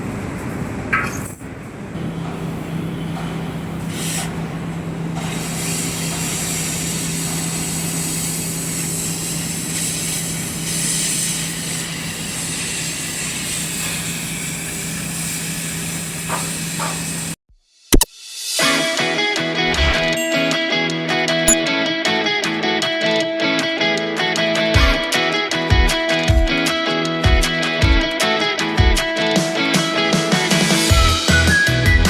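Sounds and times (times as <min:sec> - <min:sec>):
machine hissing: 0:02.0 - 0:17.4.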